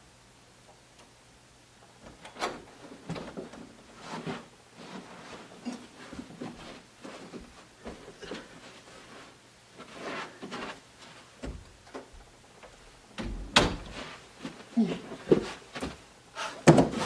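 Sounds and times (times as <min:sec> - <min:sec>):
knocks and bumps: 0:11.4 - 0:14.1.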